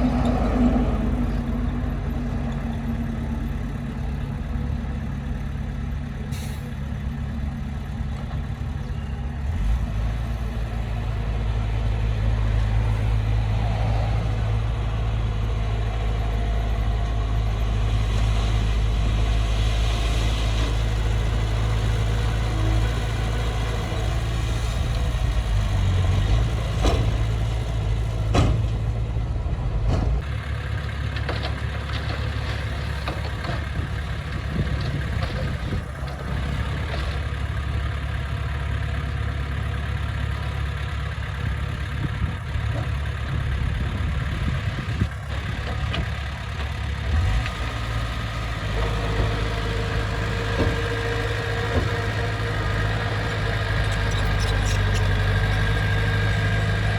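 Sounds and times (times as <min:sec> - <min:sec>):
diesel engine low rumble: 0:00.0 - 0:56.9.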